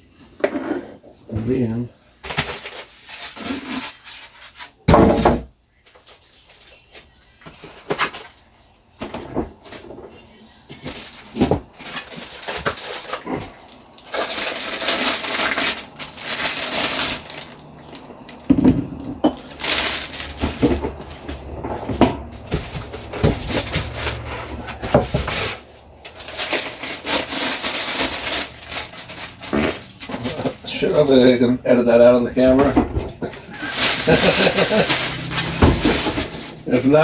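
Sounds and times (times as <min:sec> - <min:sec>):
packing crinkling and rustling: 0:10.8 - 0:31.4, 0:32.0 - 0:37.0.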